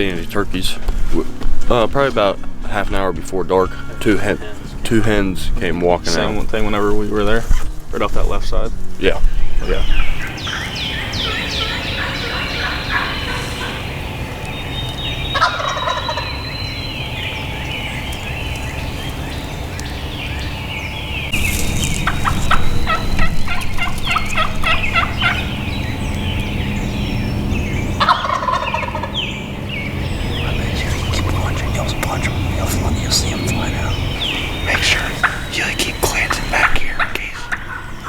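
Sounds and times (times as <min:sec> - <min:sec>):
small birds chirping: 0:00.0 - 0:38.0
turkeys gobbling: 0:09.7 - 0:38.0.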